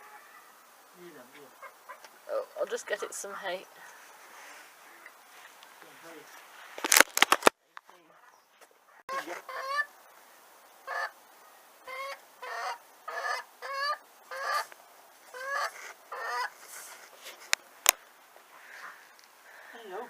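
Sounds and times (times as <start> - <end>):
poultry calling: 0.0 - 0.6, 1.3 - 2.2, 3.1 - 5.2, 8.0 - 10.0, 10.8 - 16.6, 18.4 - 19.9.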